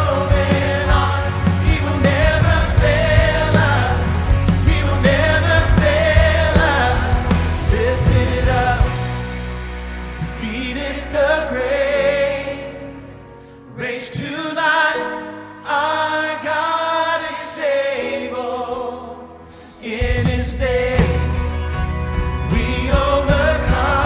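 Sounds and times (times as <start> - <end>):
instrumental accompaniment: 0.0 - 11.2
worship singing: 0.0 - 24.0.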